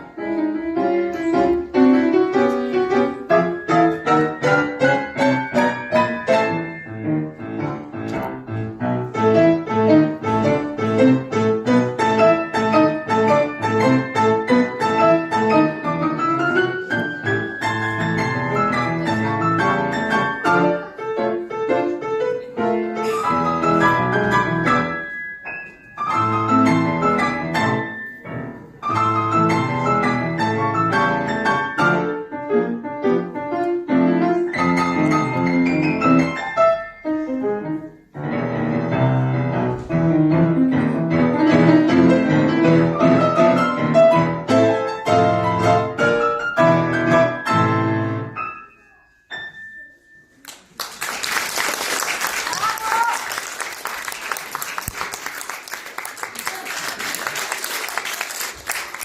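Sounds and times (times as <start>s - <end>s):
pop piano piece with bass line: 28.9s - 48.8s.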